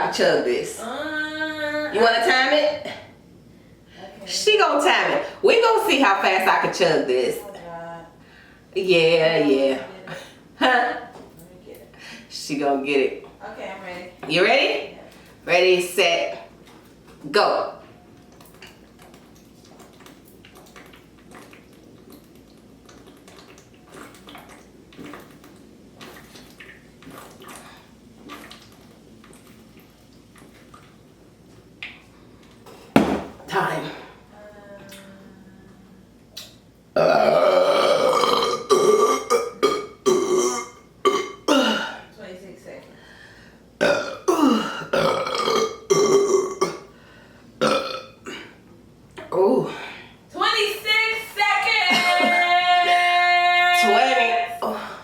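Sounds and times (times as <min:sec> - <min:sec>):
person gulping liquid: 0:18.2 - 0:32.6, 0:36.3 - 0:42.0, 0:43.8 - 0:49.3
woman burping: 0:37.0 - 0:42.1, 0:43.8 - 0:46.9, 0:47.6 - 0:48.6.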